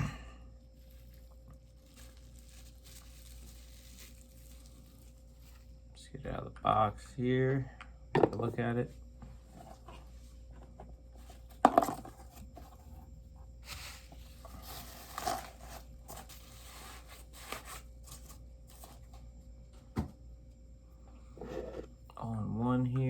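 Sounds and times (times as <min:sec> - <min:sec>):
packing rustling and scraping: 0:00.8 - 0:05.7, 0:13.6 - 0:19.2.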